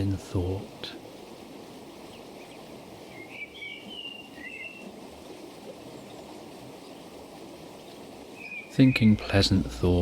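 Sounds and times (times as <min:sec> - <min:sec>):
stream water rushing: 0:00.0 - 0:10.0
bird chirping: 0:02.0 - 0:04.9, 0:07.8 - 0:09.2.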